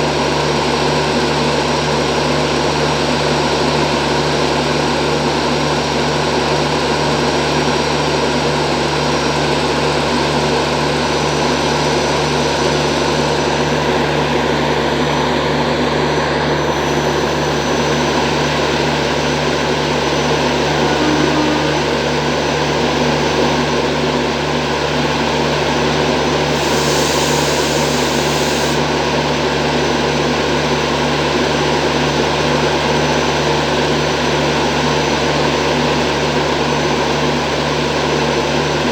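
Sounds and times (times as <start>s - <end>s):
locomotive machinery drone: 3.8s - 38.9s
short hiss: 26.5s - 28.8s.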